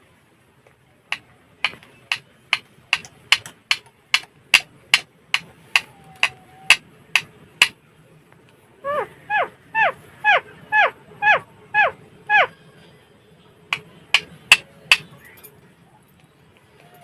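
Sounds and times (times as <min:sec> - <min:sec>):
sharp clicks: 0:01.1 - 0:04.7.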